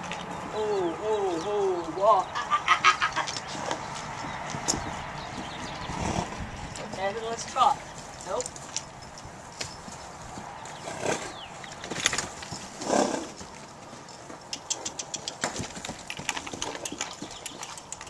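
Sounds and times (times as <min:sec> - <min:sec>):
horse hoofbeats: 0:00.0 - 0:18.0.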